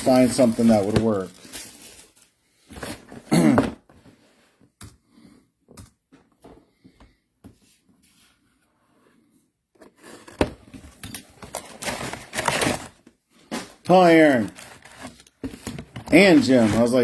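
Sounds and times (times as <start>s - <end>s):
card packs clicking and rustling: 0.0s - 3.2s, 10.0s - 17.0s.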